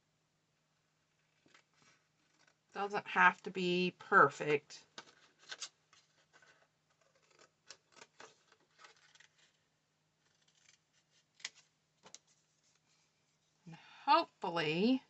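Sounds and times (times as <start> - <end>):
scissors snipping paper: 10.3 - 10.8.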